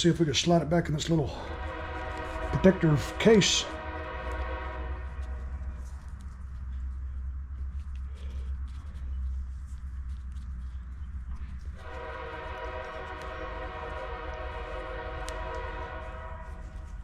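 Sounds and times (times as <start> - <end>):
low hum: 0.0 - 17.0
machinery droning chord: 1.2 - 6.8, 11.8 - 17.0.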